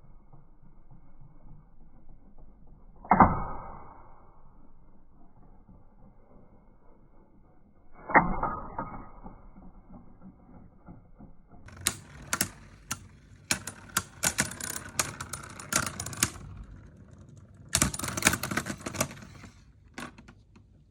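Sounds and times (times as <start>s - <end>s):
spinning tops hitting: 11.7s - 20.2s
spinning tops clashing clicks: 11.7s - 20.6s.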